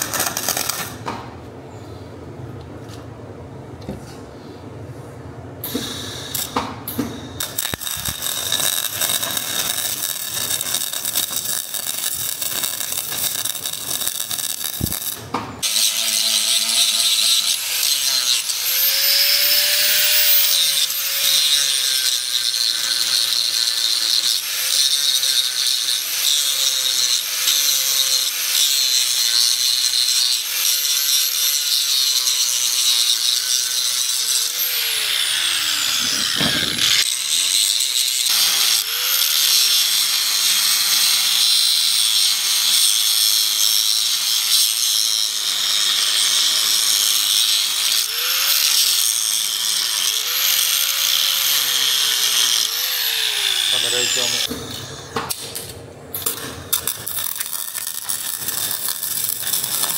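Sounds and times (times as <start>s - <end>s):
angle grinder on steel: 0.0s - 1.0s, 5.6s - 55.2s, 56.2s - 59.9s
crackling hissing metalwork: 0.0s - 1.0s, 5.6s - 34.4s, 56.1s - 59.9s.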